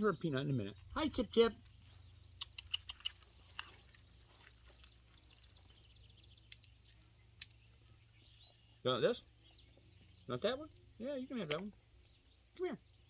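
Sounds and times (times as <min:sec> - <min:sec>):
faint bird chirps: 0:00.0 - 0:13.0
sharp light clicks: 0:06.3 - 0:08.0, 0:10.7 - 0:12.2.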